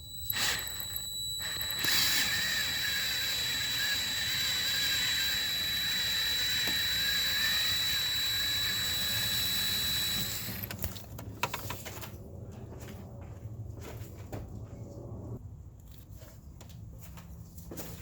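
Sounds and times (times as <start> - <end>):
motor whining: 0.0 - 10.9.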